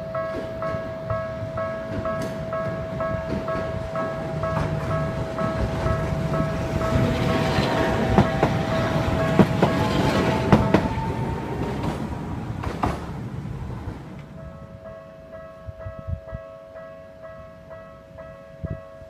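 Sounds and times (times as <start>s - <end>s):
train rumbling past: 0.0s - 18.9s
train wheels clacking on rail joints: 0.2s - 14.4s.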